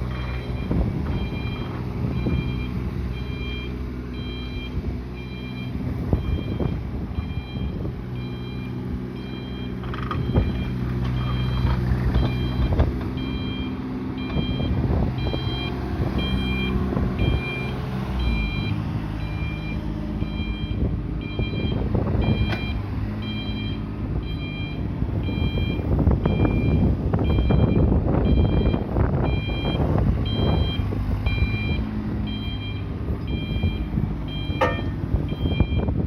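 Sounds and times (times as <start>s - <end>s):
digger engine running: 0.0s - 36.0s
excavator travel alarm beeping: 0.0s - 36.0s
machine clunks: 34.5s - 35.0s.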